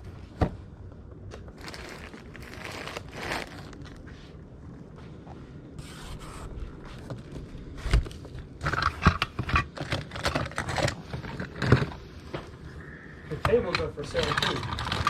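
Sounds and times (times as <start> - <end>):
objects scraping together: 13.3 - 15.0.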